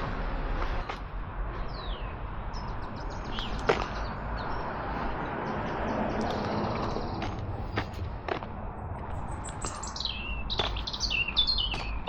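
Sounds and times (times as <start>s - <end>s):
distant road traffic hiss: 0.0s - 11.7s
bird chirps: 1.7s - 4.6s, 9.2s - 12.0s.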